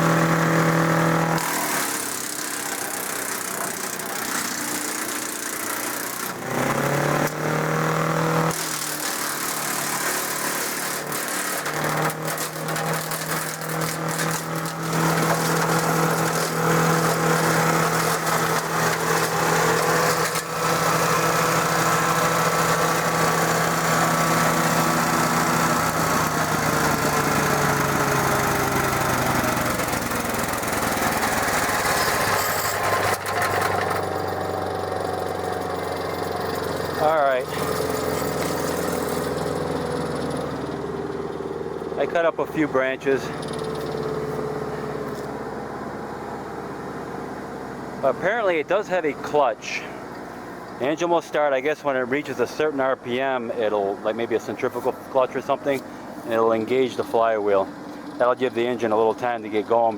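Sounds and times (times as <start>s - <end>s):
wood chipper engine running: 0.0s - 59.9s
branches being chipped: 1.3s - 32.4s.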